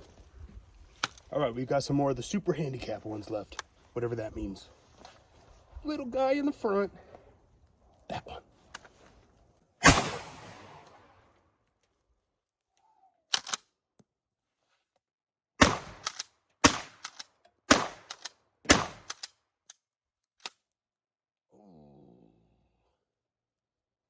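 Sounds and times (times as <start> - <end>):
shotgun shots: 9.8 - 11.2, 15.6 - 17.1, 17.7 - 19.2
shotgun pump racking: 13.3 - 13.6.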